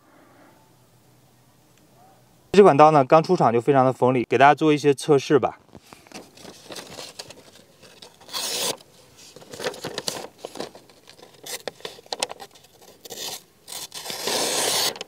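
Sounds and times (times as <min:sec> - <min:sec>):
knife slicing with scraping tearing: 0:12.8 - 0:15.0.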